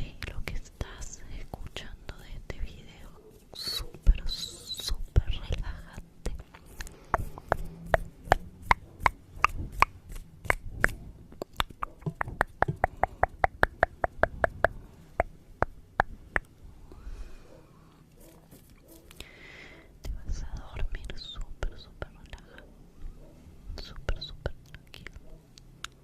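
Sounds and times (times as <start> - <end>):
soft breathy hiss: 16.7 - 18.2, 19.1 - 22.7.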